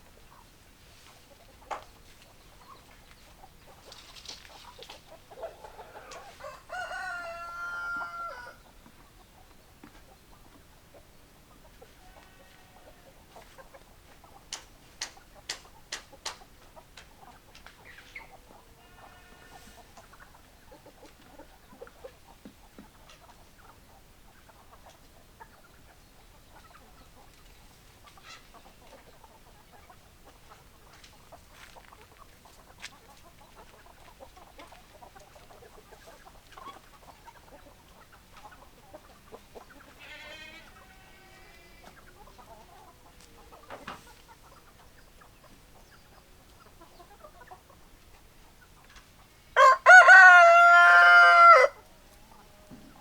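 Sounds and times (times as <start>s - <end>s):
soft chicken call: 5.4s - 8.6s, 49.6s - 52.8s
rooster crowing: 5.9s - 8.6s, 49.6s - 51.8s.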